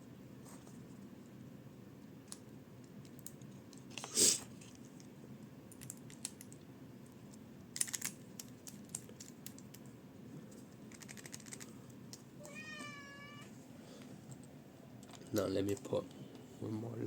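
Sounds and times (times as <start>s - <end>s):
small clicks of pencil parts: 5.7s - 6.6s, 7.8s - 9.9s
cat meowing: 12.4s - 13.6s.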